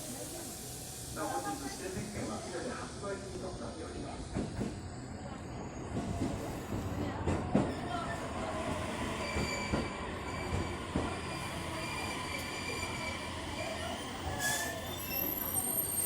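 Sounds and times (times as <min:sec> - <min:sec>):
train wheels squealing on rails: 0:04.1 - 0:16.0.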